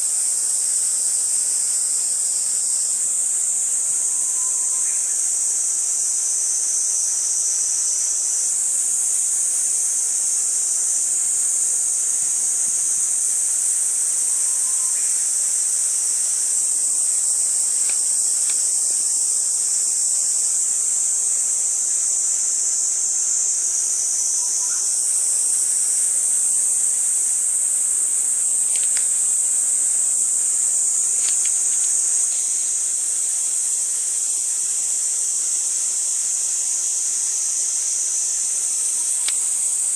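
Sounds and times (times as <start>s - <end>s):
insects buzzing: 0.0s - 39.9s
faint clicks: 39.2s - 39.5s.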